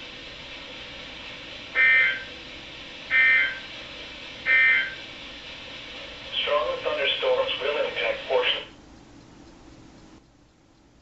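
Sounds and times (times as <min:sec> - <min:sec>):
faint radio hiss: 0:00.0 - 0:11.0.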